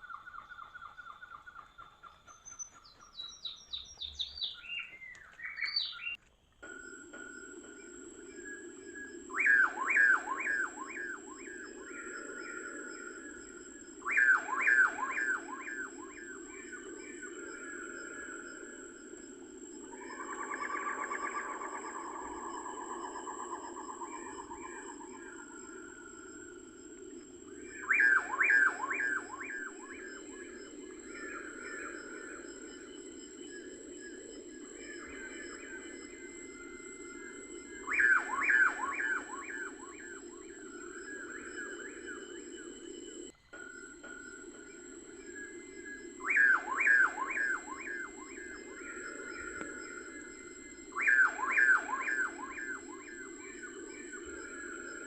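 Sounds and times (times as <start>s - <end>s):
steady low hum: 6.6s - 55.0s
bird whistling downward notes: 7.3s - 18.8s, 27.5s - 55.0s.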